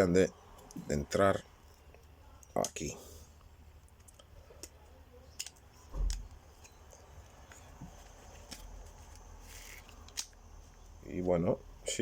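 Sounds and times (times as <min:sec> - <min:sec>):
plastic cards clicking and sliding: 0:03.9 - 0:10.4.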